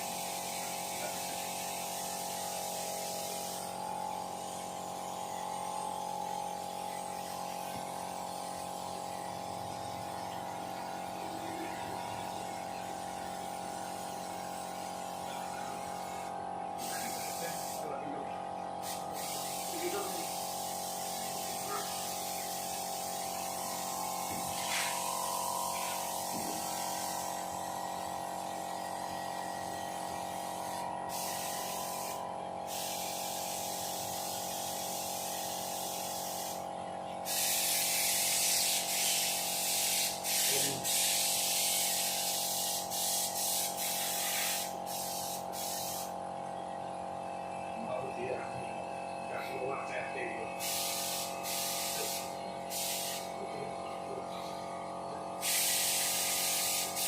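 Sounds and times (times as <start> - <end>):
air gun hissing in bursts: 0.0 - 18.2, 18.8 - 46.2, 49.6 - 54.7, 55.4 - 57.0
steady machine hum: 15.3 - 34.2, 44.8 - 57.0.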